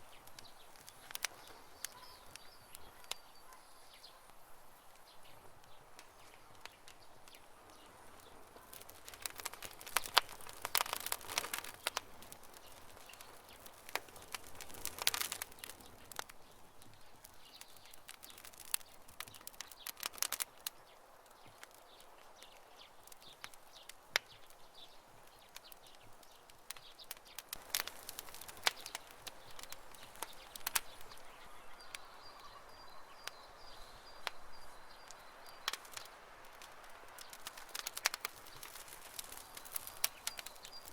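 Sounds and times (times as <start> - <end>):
wood fire crackling and popping: 0.0 - 40.9
faint bird calls: 0.2 - 5.4, 28.4 - 36.1.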